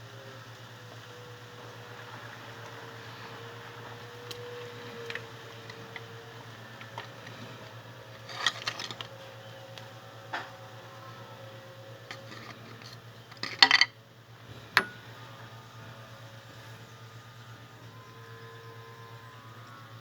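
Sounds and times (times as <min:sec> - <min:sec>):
car engine idling: 0:00.9 - 0:16.4.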